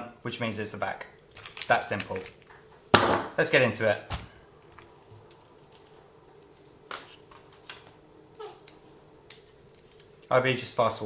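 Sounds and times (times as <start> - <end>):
faint steady hum: 0.0 - 11.0
small parts clicking and tapping: 7.6 - 10.4.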